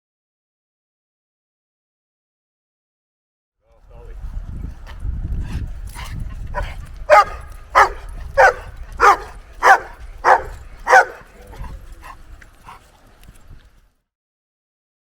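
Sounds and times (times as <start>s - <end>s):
dog barking: 6.5s - 12.8s.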